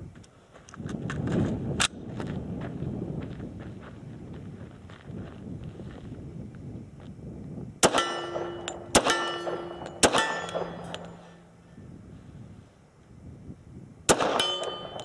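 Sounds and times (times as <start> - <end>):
pistol shots: 7.8 - 11.5, 14.1 - 15.0
ringing after gunshots: 7.8 - 11.7, 14.1 - 15.0.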